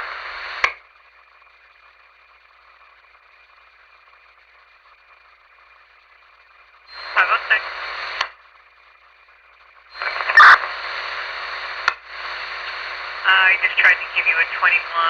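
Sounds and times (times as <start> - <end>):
radio scanner hiss: 0.0 - 15.0
radio click: 0.6 - 0.8, 7.1 - 8.4, 10.0 - 14.9.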